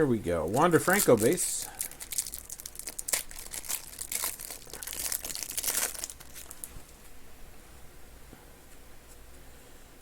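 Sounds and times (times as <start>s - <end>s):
cards crinkling: 0.4s - 6.8s.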